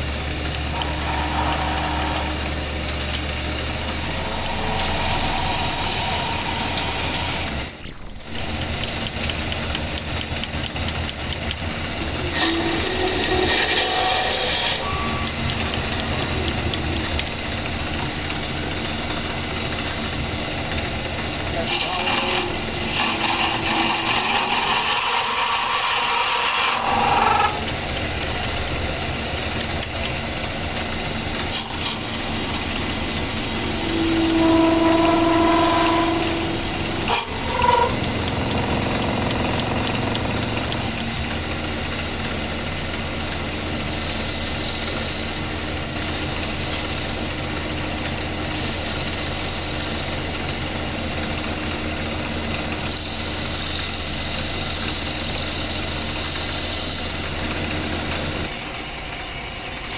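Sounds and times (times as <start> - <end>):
power tool running: 0.0 - 58.8
brief held tones: 14.8 - 18.1, 31.4 - 41.0.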